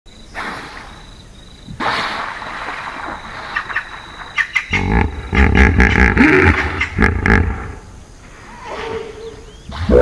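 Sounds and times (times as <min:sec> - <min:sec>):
hippopotamus deep grunting: 0:04.7 - 0:07.8.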